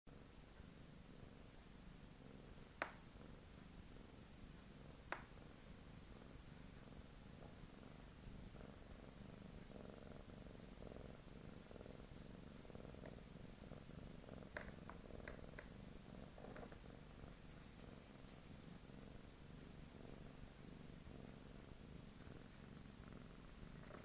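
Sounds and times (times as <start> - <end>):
cat purring: 0.1 - 24.0.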